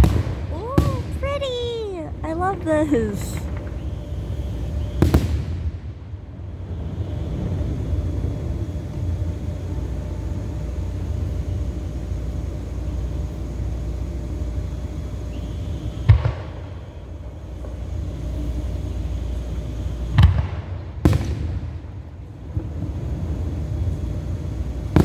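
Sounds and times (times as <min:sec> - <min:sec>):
distant fireworks booming: 0:00.0 - 0:09.4, 0:20.1 - 0:25.0.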